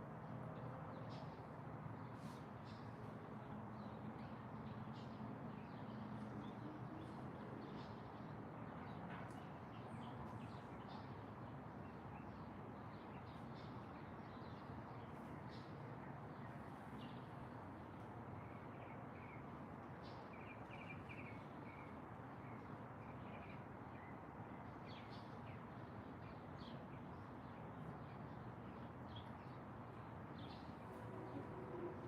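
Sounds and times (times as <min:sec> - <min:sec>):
songbirds chirping: 0:02.0 - 0:32.0
low outdoor rumble: 0:30.7 - 0:32.0.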